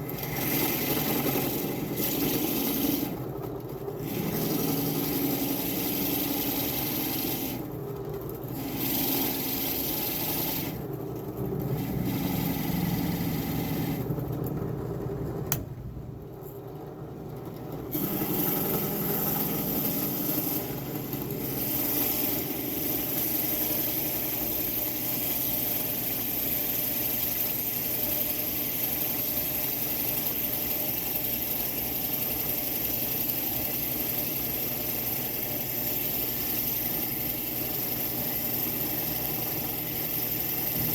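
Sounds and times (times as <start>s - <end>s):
power tool cutting wood: 17.9s - 24.0s.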